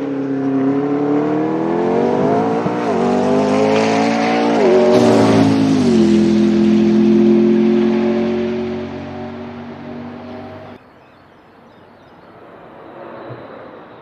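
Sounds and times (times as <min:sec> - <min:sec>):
car engine accelerating hard: 0:00.0 - 0:10.8.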